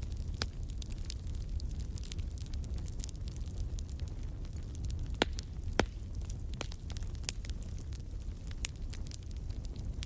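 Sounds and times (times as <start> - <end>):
campfire crackling: 0.0 - 10.0.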